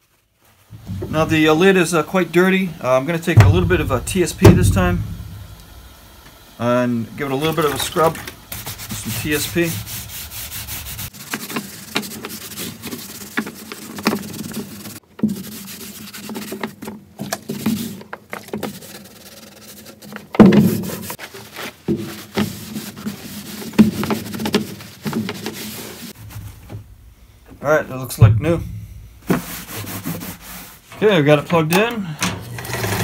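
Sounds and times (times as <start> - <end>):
knocks: 3.4 - 5.5
rubbing and scraping strokes: 6.7 - 27.0, 28.4 - 31.4.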